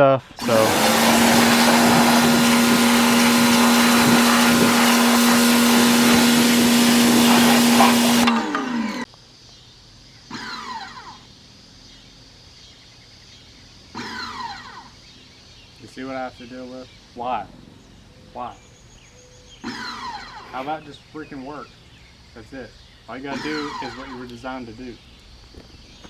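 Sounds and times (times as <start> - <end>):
pressure washer spraying: 0.2 - 9.0
motor winding down: 0.3 - 9.1.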